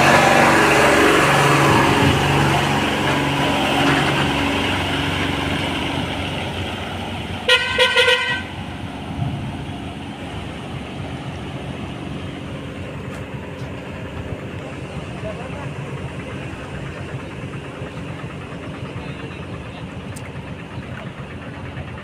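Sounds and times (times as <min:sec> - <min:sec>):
vehicle engine noise: 0:00.0 - 0:22.0
vehicle horn short toots: 0:07.5 - 0:08.5.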